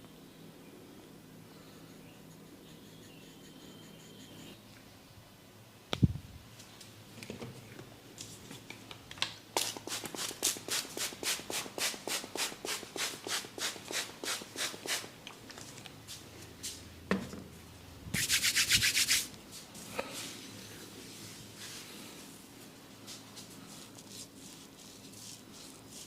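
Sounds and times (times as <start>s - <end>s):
rubbing over skin and hair: 18.2s - 19.7s, 23.0s - 26.0s.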